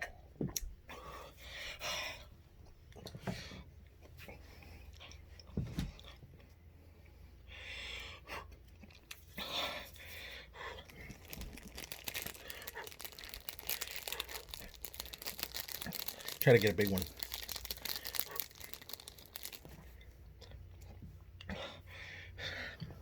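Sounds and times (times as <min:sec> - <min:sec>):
plastic packaging crinkling: 0:10.7 - 0:20.0.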